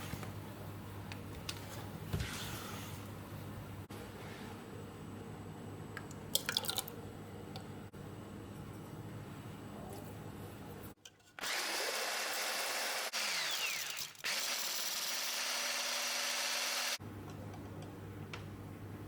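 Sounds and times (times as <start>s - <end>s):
electric hand mixer whipping: 11.4s - 17.0s.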